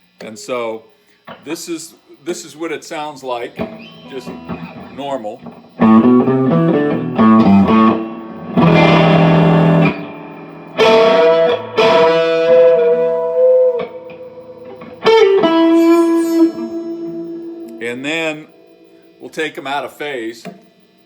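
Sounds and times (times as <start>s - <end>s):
electric guitar notes and chord: 3.6s - 19.8s.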